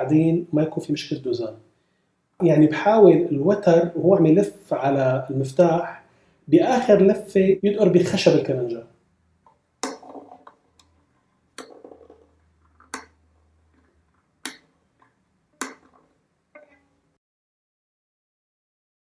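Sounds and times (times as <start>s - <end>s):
wooden tuning peg clicks: 9.4s - 11.0s, 11.6s - 16.8s.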